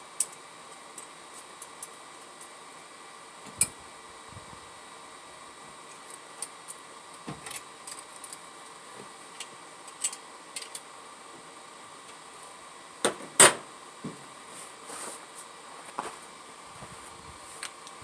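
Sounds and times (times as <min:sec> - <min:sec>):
steady background hum: 0:00.0 - 0:18.0.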